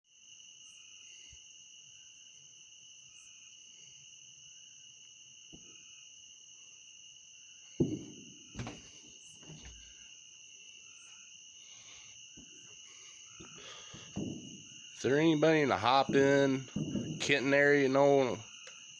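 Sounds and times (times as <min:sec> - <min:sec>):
shrill insect chorus: 0:00.1 - 0:18.9
loud outdoor bangs: 0:07.7 - 0:10.0, 0:11.6 - 0:18.6
faint knocks: 0:07.8 - 0:10.0, 0:12.4 - 0:18.1.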